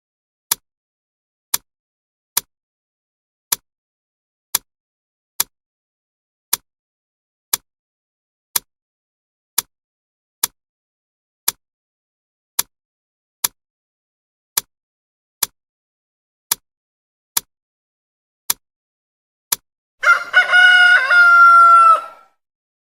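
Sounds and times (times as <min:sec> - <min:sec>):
clock ticking: 0:15.4 - 0:15.6, 0:16.5 - 0:16.7
rooster crow alarm: 0:20.0 - 0:22.4.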